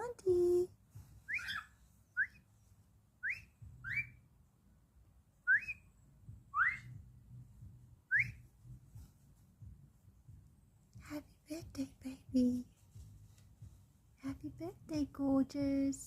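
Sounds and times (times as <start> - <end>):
cockatiel whistled chirps: 1.3 - 2.4, 3.2 - 4.2, 5.5 - 5.9, 6.5 - 6.9, 8.1 - 8.4.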